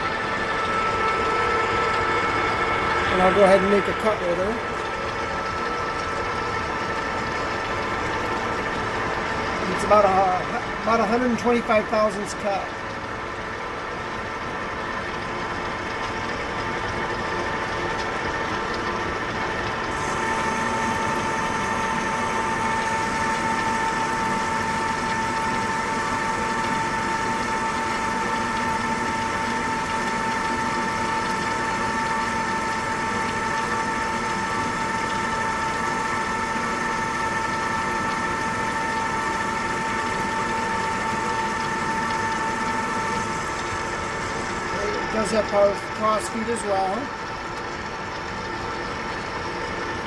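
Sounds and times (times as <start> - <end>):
metal lathe humming: 0.0 - 49.4.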